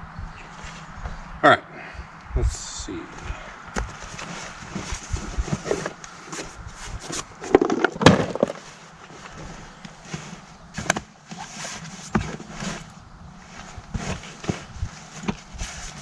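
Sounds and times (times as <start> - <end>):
firewood knocking and clattering: 7.1 - 8.7.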